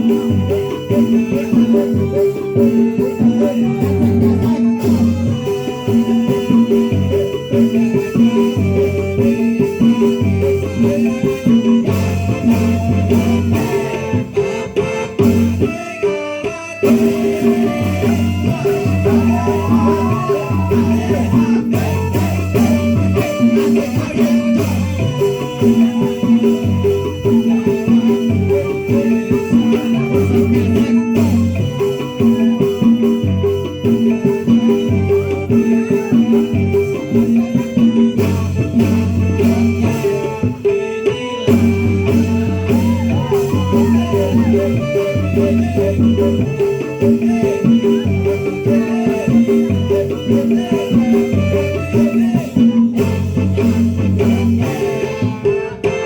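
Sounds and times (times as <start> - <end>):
drums: 0.0 - 56.0
wavering melody line: 16.8 - 55.4.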